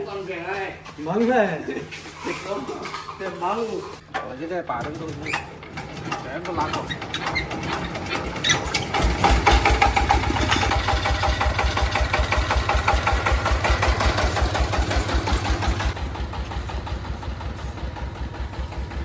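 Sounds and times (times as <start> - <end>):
small engine running: 5.8 - 19.0.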